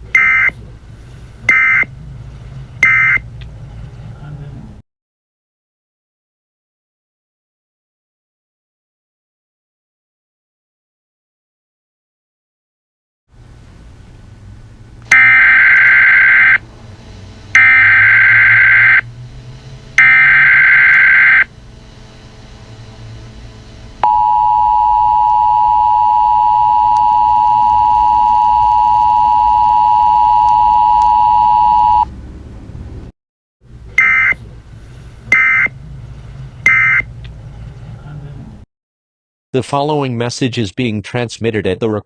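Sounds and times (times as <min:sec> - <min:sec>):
two-tone attention signal: 0:00.2 - 0:00.5, 0:01.5 - 0:01.9, 0:02.8 - 0:03.2, 0:15.1 - 0:16.6, 0:17.6 - 0:19.0, 0:20.0 - 0:21.5, 0:24.0 - 0:32.1, 0:34.0 - 0:34.4, 0:35.3 - 0:35.7, 0:36.7 - 0:37.1
screeching data bursts: 0:15.1 - 0:16.6, 0:17.5 - 0:19.1, 0:19.9 - 0:21.5.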